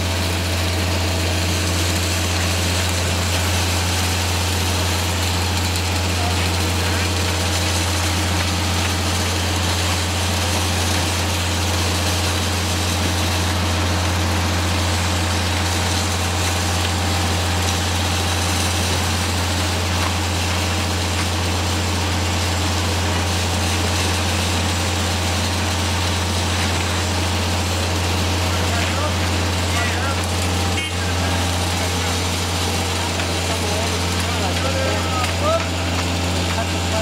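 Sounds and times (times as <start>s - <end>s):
diesel engine droning: 0.0s - 37.0s.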